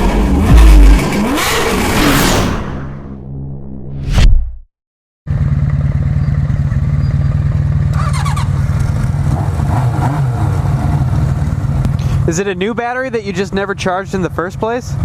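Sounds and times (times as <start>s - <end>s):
motorcycle engine idling: 5.3s - 9.3s.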